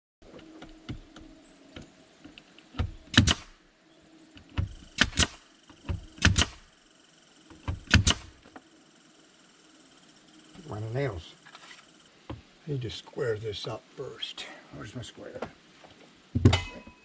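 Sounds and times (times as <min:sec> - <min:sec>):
hammering nails into wood: 0:02.8 - 0:03.5, 0:04.5 - 0:06.6, 0:07.6 - 0:08.3.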